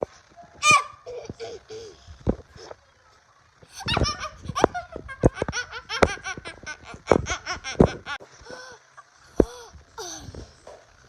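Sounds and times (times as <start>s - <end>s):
child laughing: 0.6s - 2.0s, 3.7s - 9.2s.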